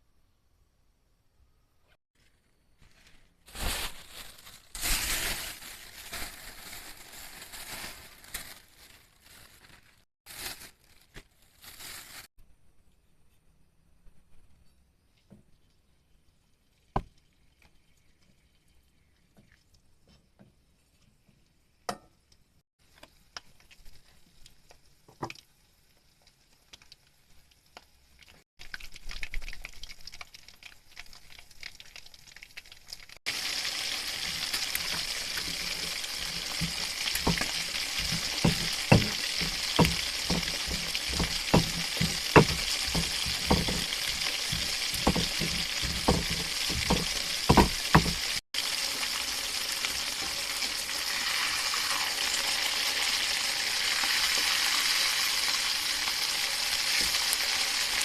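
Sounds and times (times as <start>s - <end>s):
oil crackling and popping: 2.2s - 12.3s, 22.3s - 58.0s
food sizzling in hot oil: 23.1s - 58.0s.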